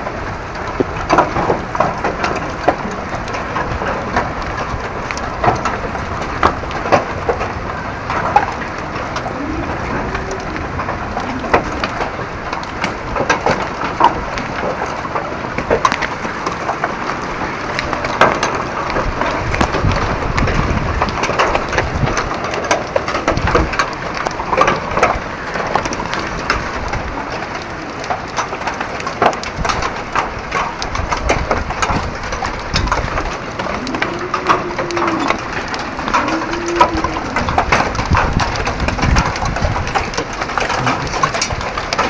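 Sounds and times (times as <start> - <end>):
heavy hail pelting down: 0.0 - 42.0
low rising and falling hoots: 9.1 - 12.3.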